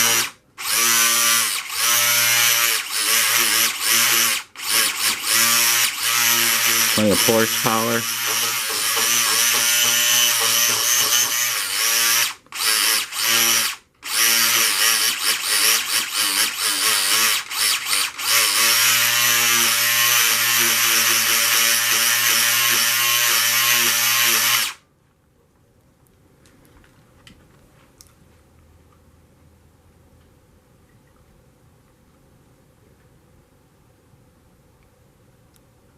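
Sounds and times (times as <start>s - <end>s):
small electric motor whine: 0.0s - 24.8s.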